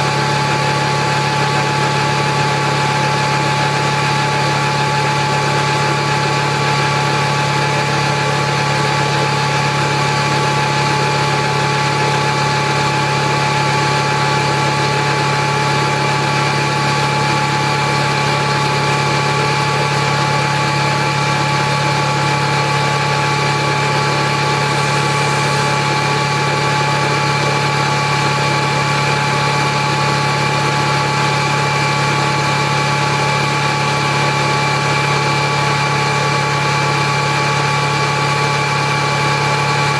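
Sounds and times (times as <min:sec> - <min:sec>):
air compressor hum: 0:00.0 - 0:39.9
high whine: 0:24.3 - 0:26.9.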